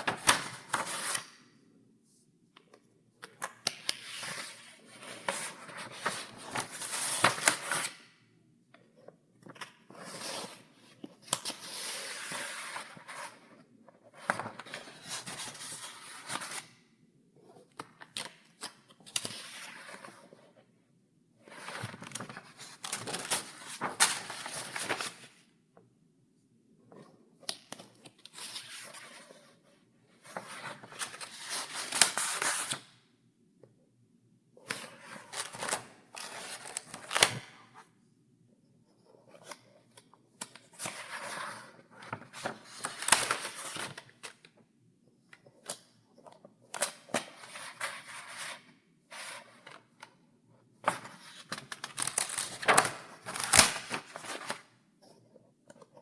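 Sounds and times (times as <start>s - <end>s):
paper pages turning: 0.0s - 1.2s, 3.7s - 7.9s, 21.5s - 25.4s, 40.8s - 44.2s, 50.9s - 54.7s.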